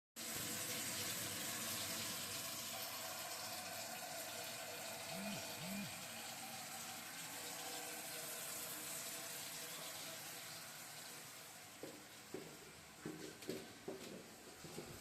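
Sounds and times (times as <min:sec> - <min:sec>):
water running from a tap: 0:00.2 - 0:12.3.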